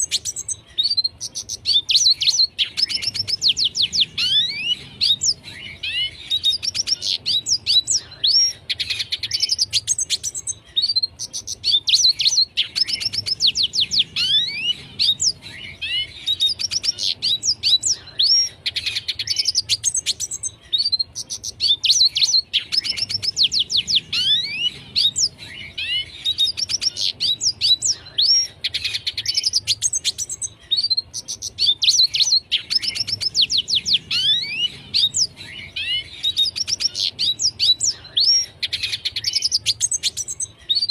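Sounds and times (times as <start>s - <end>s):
bird singing twittering phrases: 0.0s - 40.9s.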